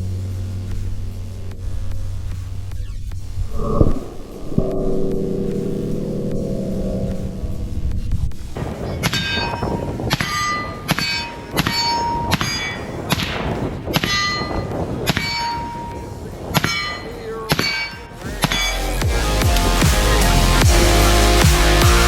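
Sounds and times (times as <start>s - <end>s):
steel targets ringing: 3.9s - 19.0s.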